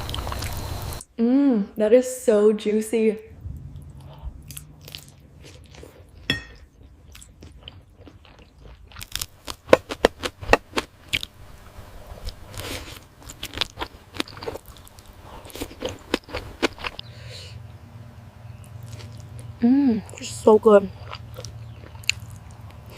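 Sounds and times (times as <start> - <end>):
chewing and biting: 4.5 - 11.3, 12.1 - 17.1, 18.6 - 19.6, 20.9 - 22.9
sharp wet crunching clicks: 21.0 - 22.9.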